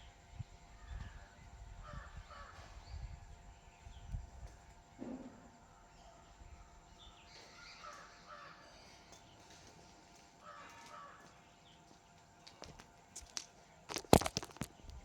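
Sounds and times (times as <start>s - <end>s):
crow cawing: 10.4s - 11.3s.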